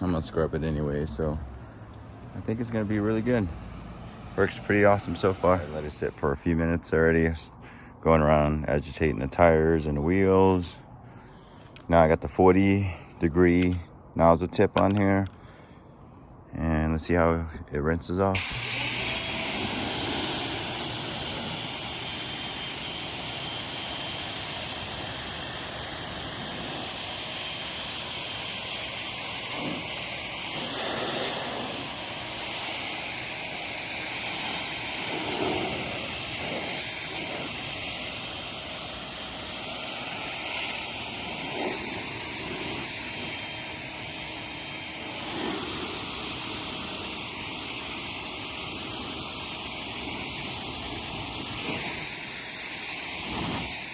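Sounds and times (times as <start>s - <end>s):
pressure washer water jet hissing: 2.0s - 7.2s, 18.4s - 53.9s.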